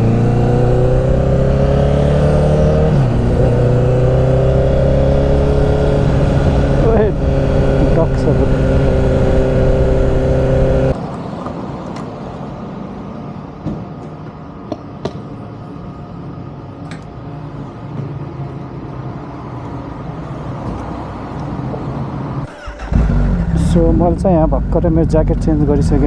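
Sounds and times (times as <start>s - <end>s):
motorcycle engine running: 0.0s - 11.0s, 22.6s - 26.0s
vehicle rumble: 0.0s - 14.7s, 20.6s - 26.0s.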